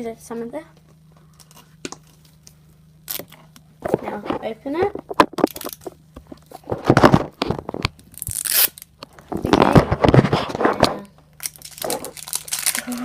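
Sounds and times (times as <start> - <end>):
plastic wrapper tearing and crinkling: 3.0 - 3.4, 5.3 - 6.0, 6.6 - 13.0.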